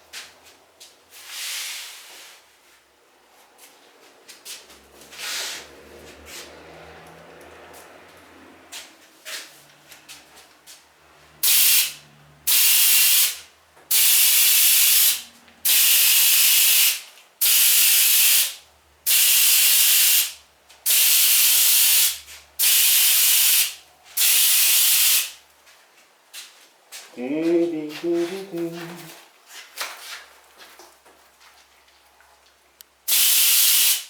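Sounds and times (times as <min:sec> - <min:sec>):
air sprayer hissing bursts: 0:11.4 - 0:25.4, 0:33.1 - 0:34.0.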